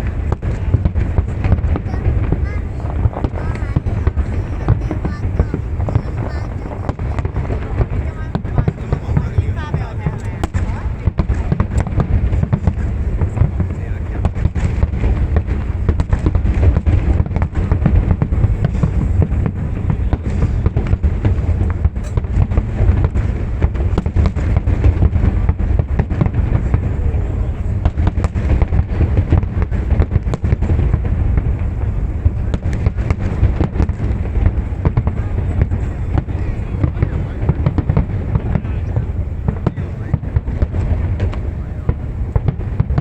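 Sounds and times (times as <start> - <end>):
fireworks booming: 0.0 - 43.0
fireworks crackling: 0.0 - 43.0.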